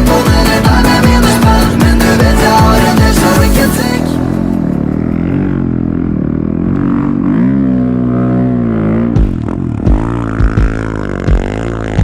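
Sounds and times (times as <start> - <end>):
snow vehicle engine revving: 0.0 - 12.0
heavy thumps: 9.1 - 11.5.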